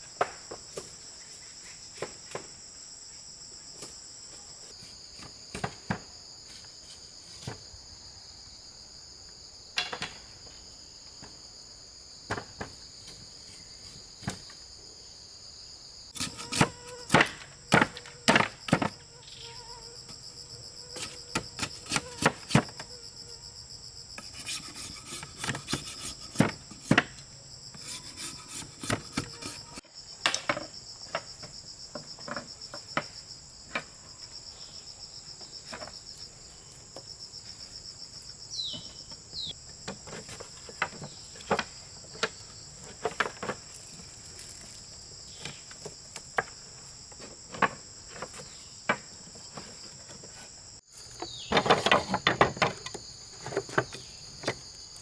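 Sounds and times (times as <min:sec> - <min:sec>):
insects droning: 0:00.0 - 0:55.0.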